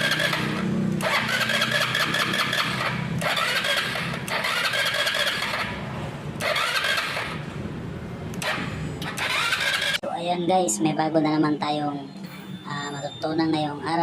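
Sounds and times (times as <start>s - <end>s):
motorcycle starter cranking: 0.0s - 5.8s, 6.4s - 7.5s, 8.4s - 10.0s.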